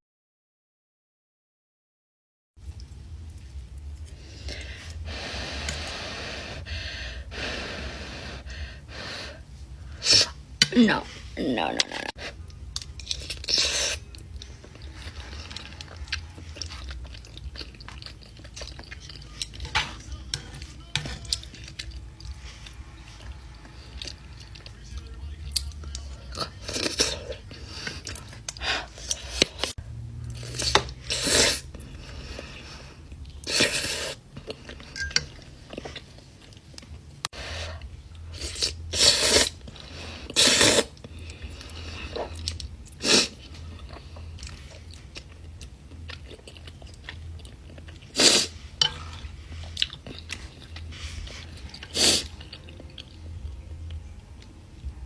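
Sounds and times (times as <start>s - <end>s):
steady low hum: 2.6s - 55.0s
person chewing and crunching: 12.1s - 37.1s, 37.7s - 55.0s.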